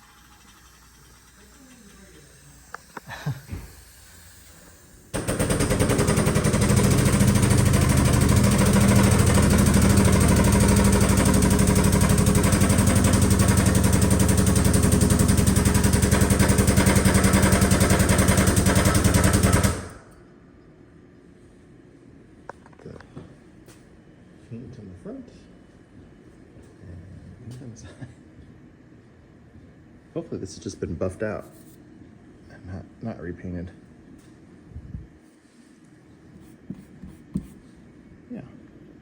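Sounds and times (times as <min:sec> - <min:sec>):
rapid mechanical hammering rattle: 0:00.0 - 0:03.1, 0:04.4 - 0:20.1.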